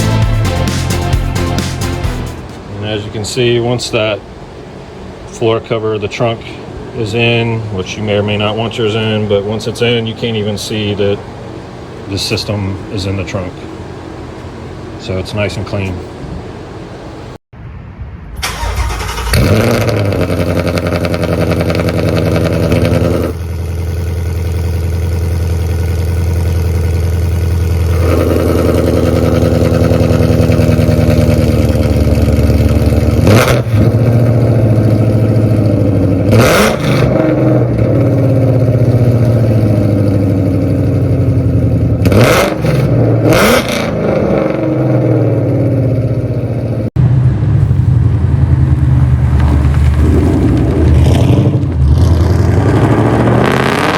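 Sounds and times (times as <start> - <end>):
car engine starting and idling: 0.0 - 17.4, 18.3 - 53.9
engine throttle blips: 0.0 - 53.9.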